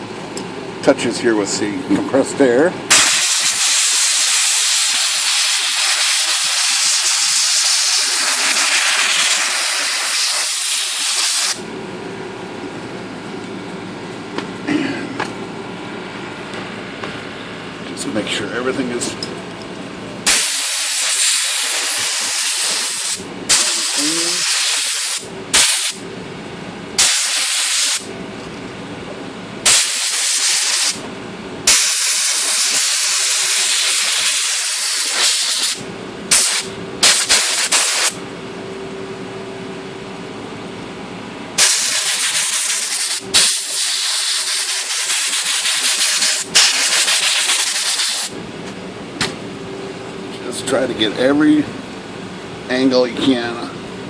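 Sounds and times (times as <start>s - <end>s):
compressed air blasting: 2.9s - 11.6s, 20.2s - 26.0s, 27.0s - 28.1s, 29.6s - 31.0s, 31.6s - 38.2s, 41.6s - 48.4s.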